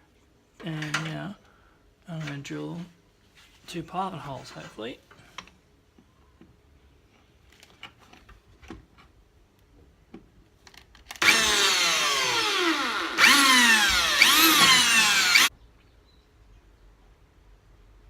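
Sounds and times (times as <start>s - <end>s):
electric drill drilling through metal: 11.2s - 15.5s.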